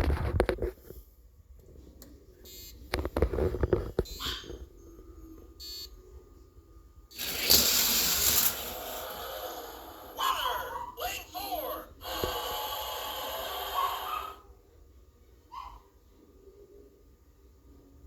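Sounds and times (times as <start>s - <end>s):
toy cars clattering on track: 7.2s - 9.1s
toy car rolling rush: 7.2s - 9.7s.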